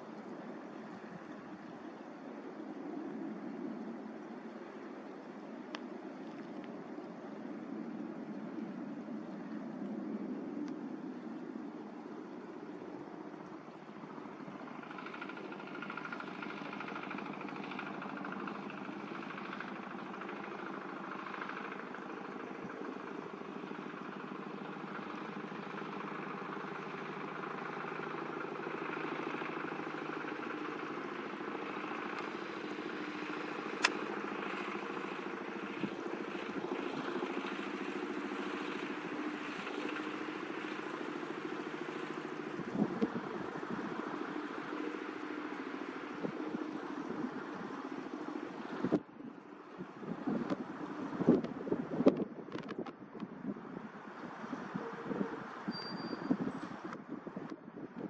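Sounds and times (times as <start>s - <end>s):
distant jet engines hum: 0.0s - 58.0s
sharp click: 33.8s - 34.1s.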